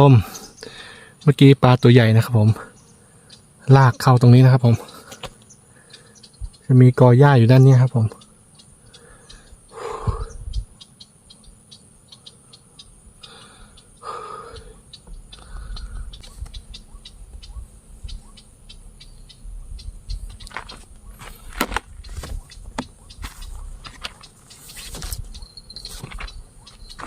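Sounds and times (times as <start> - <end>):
insects chirping: 0.0 - 27.0.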